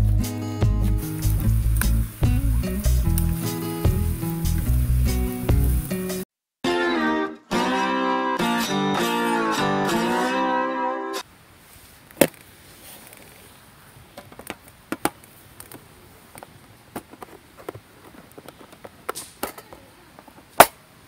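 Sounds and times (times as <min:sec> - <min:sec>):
guitar music: 0:00.0 - 0:11.2.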